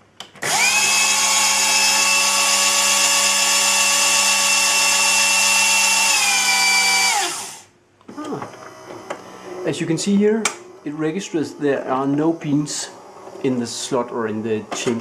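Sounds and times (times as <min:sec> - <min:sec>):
coffee grinder motor whining: 0:00.4 - 0:07.7.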